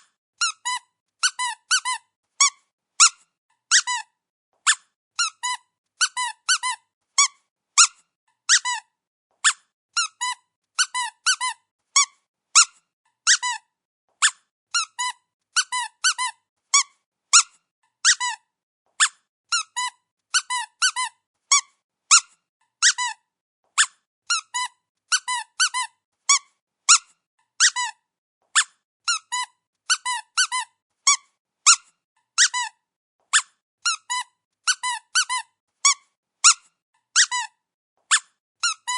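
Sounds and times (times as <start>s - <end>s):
squeaky dog toy squeaking: 0.0s - 38.9s.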